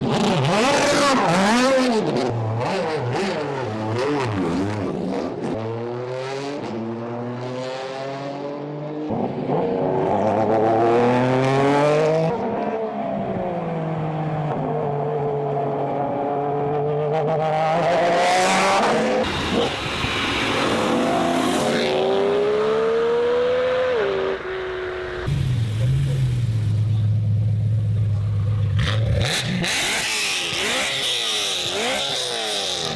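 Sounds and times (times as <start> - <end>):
car engine revving: 16.6 - 32.9.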